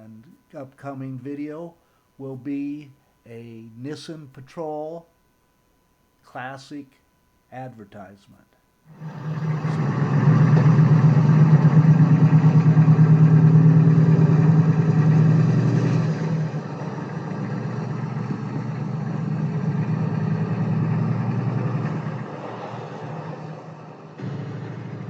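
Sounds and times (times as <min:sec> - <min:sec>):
engine running with fast throb: 0:08.9 - 0:25.0.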